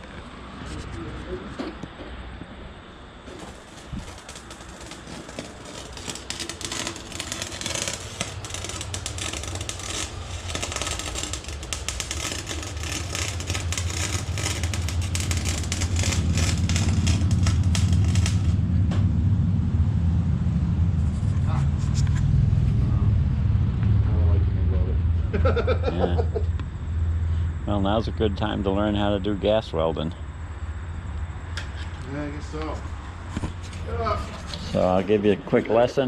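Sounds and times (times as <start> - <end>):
welder crackling and sputtering: 3.2 - 18.6.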